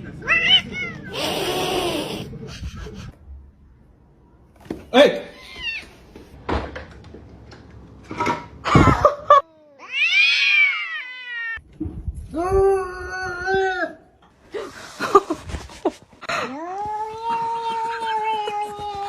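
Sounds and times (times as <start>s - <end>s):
cat yowling: 9.4s - 11.6s.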